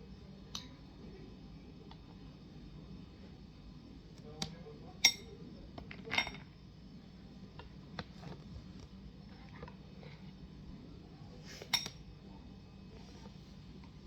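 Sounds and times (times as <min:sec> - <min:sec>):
low steady hum: 0:00.0 - 0:14.0
glassware clink: 0:05.0 - 0:05.3.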